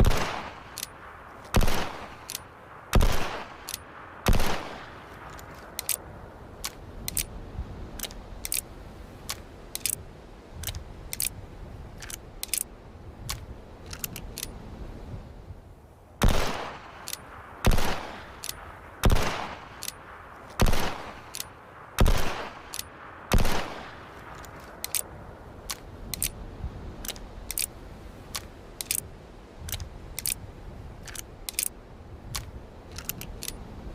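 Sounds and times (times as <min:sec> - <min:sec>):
loud gunshots: 0:00.0 - 0:00.8, 0:01.6 - 0:02.3, 0:02.9 - 0:05.0, 0:16.2 - 0:16.9, 0:17.6 - 0:18.4, 0:19.0 - 0:19.8, 0:20.6 - 0:21.3, 0:22.0 - 0:22.7, 0:23.3 - 0:24.0
revolver action clicking: 0:32.3 - 0:33.6.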